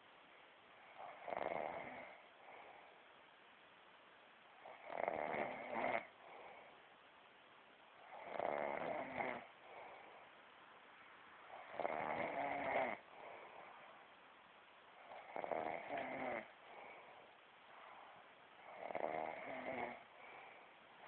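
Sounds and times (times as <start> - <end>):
quiet breathing: 0.0 - 21.0
person snoring: 4.6 - 6.6, 8.1 - 10.0, 11.6 - 13.4, 15.0 - 17.1, 18.6 - 20.6.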